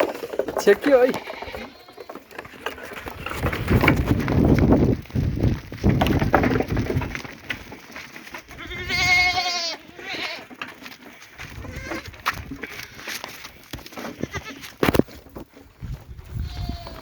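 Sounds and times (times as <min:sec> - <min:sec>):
goats shuffling and knocking: 0:00.0 - 0:17.0
young goat bleating: 0:01.1 - 0:02.2, 0:08.6 - 0:10.5, 0:11.6 - 0:12.2, 0:14.2 - 0:14.7, 0:16.3 - 0:17.0.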